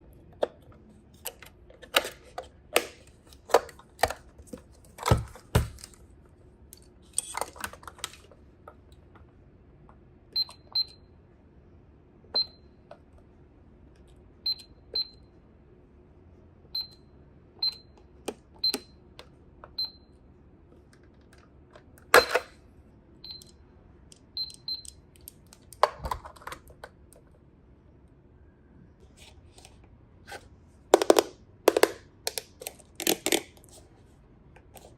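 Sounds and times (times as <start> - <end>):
plastic toy clicks and knocks: 30.9 - 33.5.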